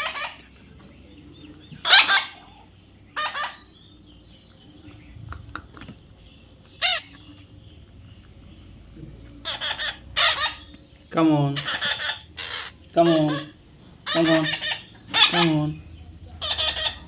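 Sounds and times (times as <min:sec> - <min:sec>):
parrot squawking: 0:00.0 - 0:00.5, 0:01.8 - 0:03.8, 0:06.8 - 0:07.3, 0:09.4 - 0:10.8, 0:11.5 - 0:15.8, 0:16.4 - 0:17.0.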